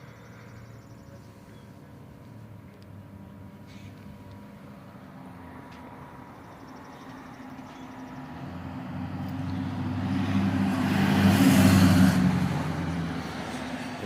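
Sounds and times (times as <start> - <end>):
go-kart engine passing: 8.1 - 14.0.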